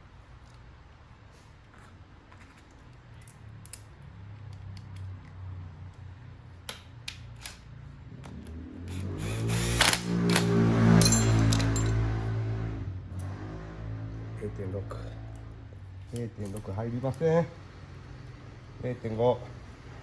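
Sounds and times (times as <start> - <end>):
steady motor drone: 8.2 - 16.1
metal tool clicks and knocks: 9.8 - 12.0.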